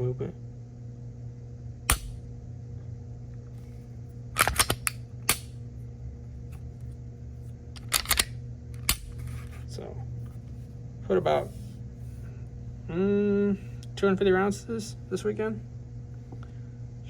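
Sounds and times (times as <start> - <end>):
pistol trigger metallic clicks: 1.9 - 2.2, 4.4 - 5.5.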